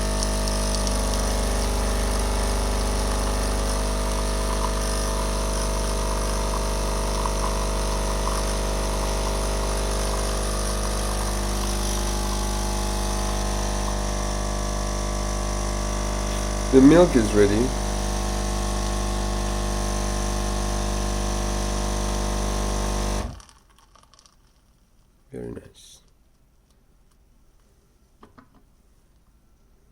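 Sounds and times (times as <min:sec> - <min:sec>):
coffee machine pump humming: 0:00.0 - 0:23.4.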